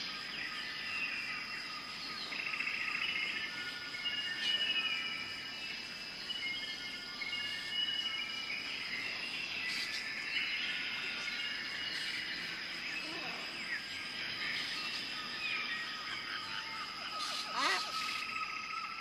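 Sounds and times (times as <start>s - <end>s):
birds chirping and whistling: 0.0s - 19.0s
high insect drone: 0.0s - 19.0s
quick gliding bird calls: 17.0s - 18.3s.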